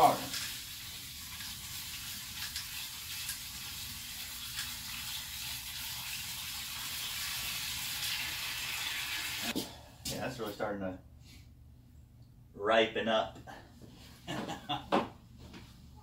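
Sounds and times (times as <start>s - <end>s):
water pouring into bucket: 0.0s - 9.5s.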